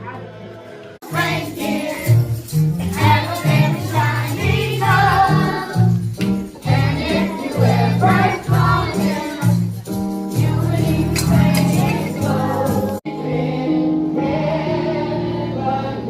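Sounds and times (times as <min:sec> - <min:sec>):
band accompaniment: 0:01.0 - 0:13.1
gospel choir singing: 0:01.0 - 0:16.0.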